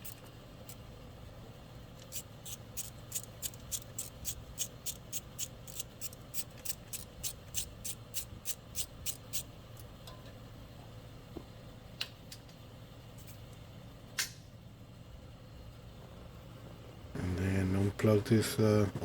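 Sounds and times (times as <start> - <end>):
ratchet wrench clicking: 2.0 - 9.5.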